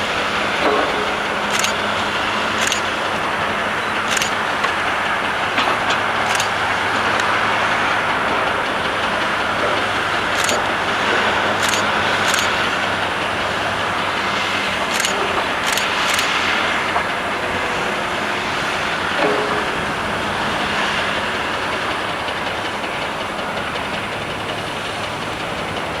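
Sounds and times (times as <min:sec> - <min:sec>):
excavator diesel engine humming: 0:00.0 - 0:26.0
hydraulic and mechanical noise: 0:00.0 - 0:26.0
short sharp high clicks: 0:02.6 - 0:02.9, 0:03.8 - 0:04.4.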